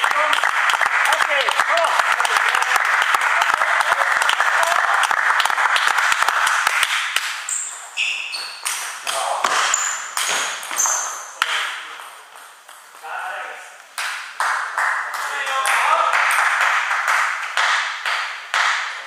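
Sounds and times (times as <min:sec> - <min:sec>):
spectators applauding: 0:00.0 - 0:07.4, 0:14.4 - 0:18.7
table tennis ball bouncing: 0:06.4 - 0:13.0.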